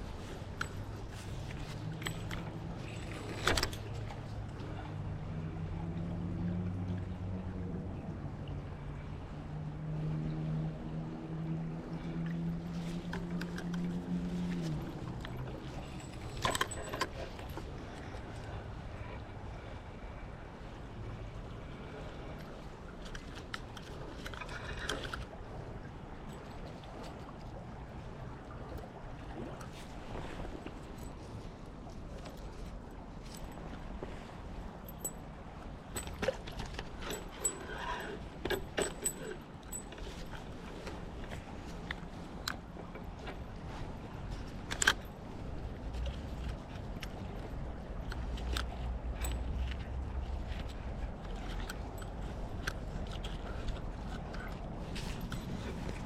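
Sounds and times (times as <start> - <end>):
creek running water: 0.0 - 56.0
small clicks and rattles: 14.7 - 17.6, 35.9 - 42.6.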